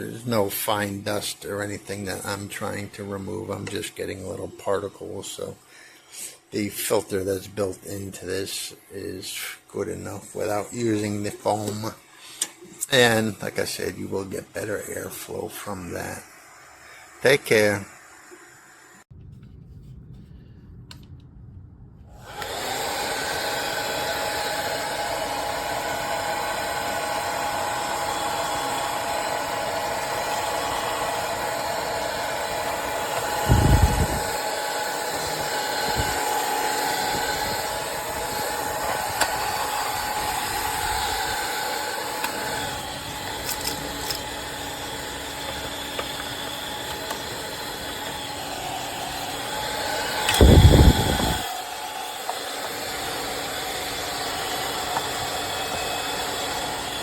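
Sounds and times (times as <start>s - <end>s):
mini vacuum cleaner whirring: 22.2s - 57.0s.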